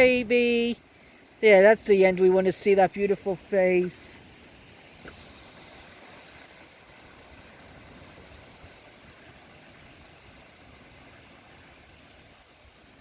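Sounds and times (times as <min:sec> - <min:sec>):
wind rumbling on microphone: 0:03.4 - 0:13.0.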